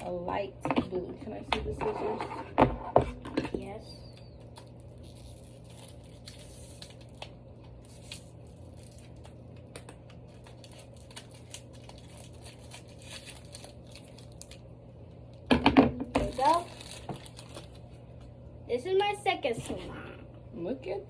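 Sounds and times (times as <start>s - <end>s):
steady low hum: 0.0s - 21.0s
hands clicking and crinkling: 3.6s - 14.7s.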